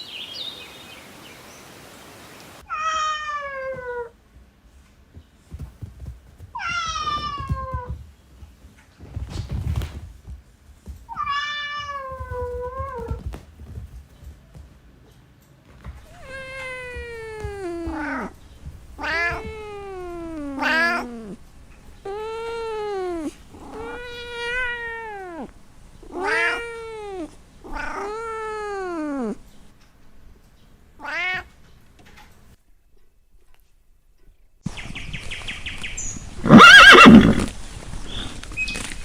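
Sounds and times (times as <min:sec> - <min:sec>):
cat meowing: 0:02.6 - 0:04.1, 0:06.6 - 0:08.0, 0:11.1 - 0:13.2, 0:16.0 - 0:21.4, 0:22.0 - 0:29.4, 0:31.0 - 0:31.5, 0:36.5 - 0:37.5.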